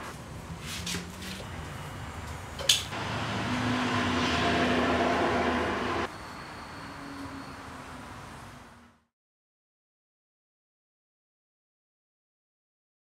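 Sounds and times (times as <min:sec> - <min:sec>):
power tool humming: 0:02.9 - 0:06.1.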